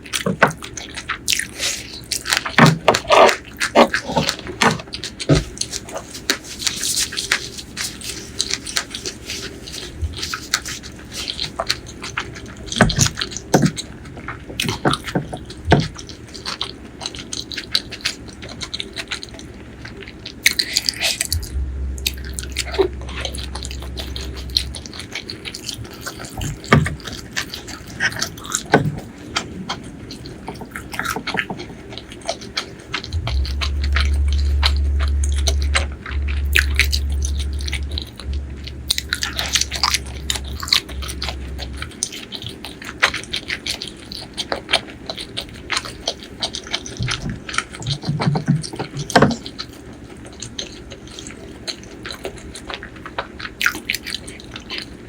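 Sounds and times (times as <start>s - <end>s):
wet chewing and smacking: 0.0s - 55.0s
low rumble: 21.1s - 27.5s, 32.6s - 42.9s.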